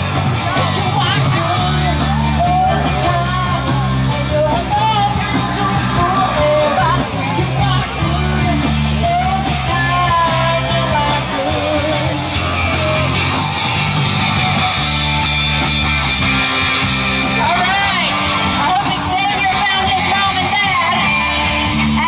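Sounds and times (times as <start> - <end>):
person singing: 0.0 - 13.6, 17.2 - 22.0
bass line: 0.0 - 22.0
drums with cymbals: 0.0 - 22.0
guitar: 0.0 - 22.0.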